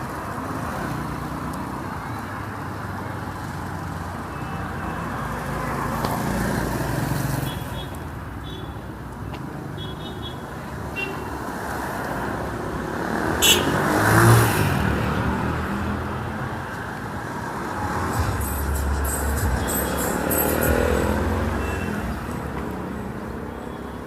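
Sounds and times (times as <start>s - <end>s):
car passing by: 13.0s - 23.0s.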